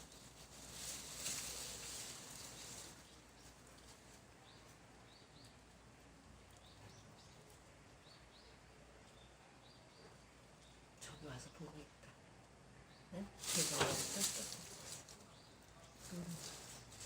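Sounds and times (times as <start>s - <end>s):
rustling hiss: 0.0s - 4.9s, 13.3s - 17.0s
small birds chirping: 0.0s - 17.0s.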